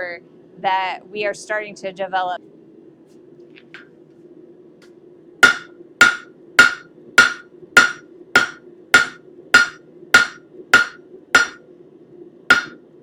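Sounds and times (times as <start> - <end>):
hammer clanging on steel anvil: 5.4 - 11.6, 12.5 - 12.8.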